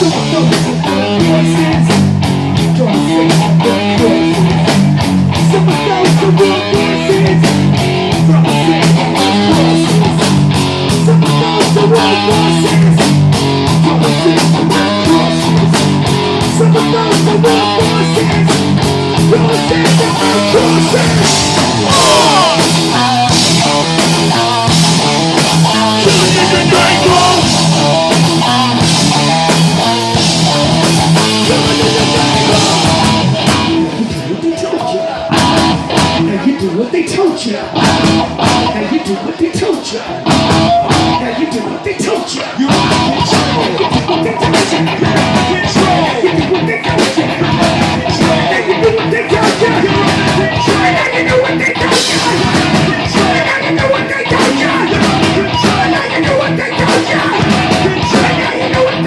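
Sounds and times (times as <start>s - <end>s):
sliding guitar notes: 0.0s - 34.4s
electric guitar riff: 0.0s - 39.4s, 40.0s - 59.0s
bass guitar: 0.0s - 59.0s
drum hits: 15.7s - 33.9s, 35.3s - 36.3s, 37.8s - 38.8s.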